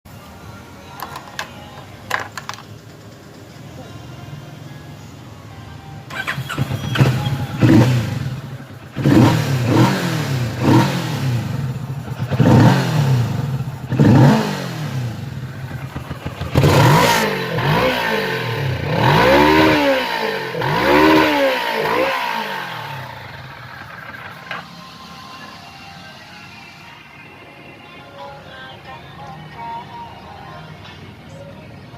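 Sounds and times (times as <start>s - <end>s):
motorcycle engine revving: 6.1s - 24.8s.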